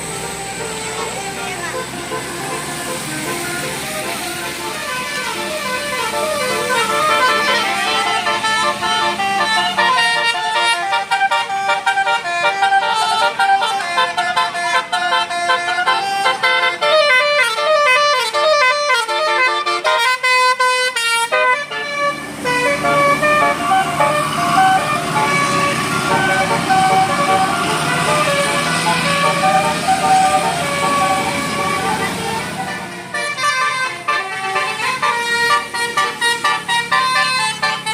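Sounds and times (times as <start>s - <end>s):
bus air horn melody: 0.0s - 37.9s.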